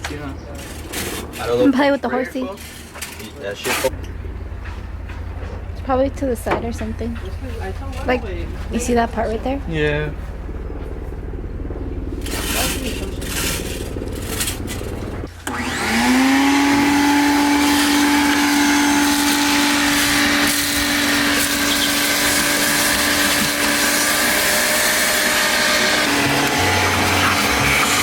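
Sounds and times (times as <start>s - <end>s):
vacuum motor whining and hissing: 12.1s - 28.0s.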